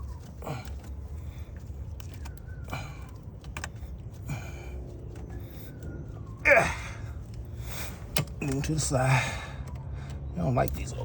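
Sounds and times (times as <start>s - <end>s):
low steady rumble: 0.0s - 11.0s
hands handling hose clamps: 8.1s - 8.8s.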